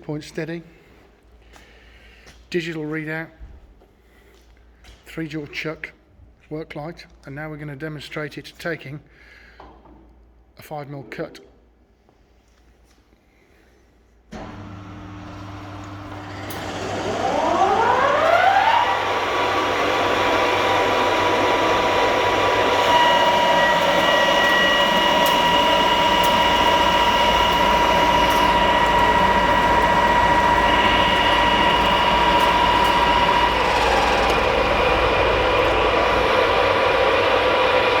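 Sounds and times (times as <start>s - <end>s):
lathe mechanical noise: 14.4s - 38.0s
lathe spindle whine: 14.4s - 38.0s.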